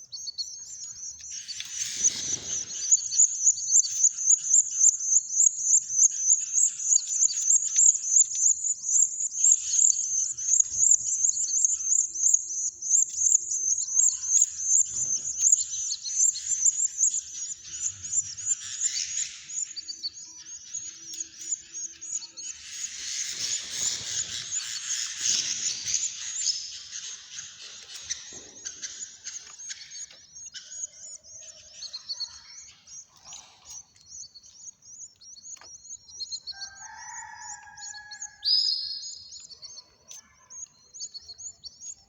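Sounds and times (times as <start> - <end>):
chicks cheeping: 0.0 - 42.0.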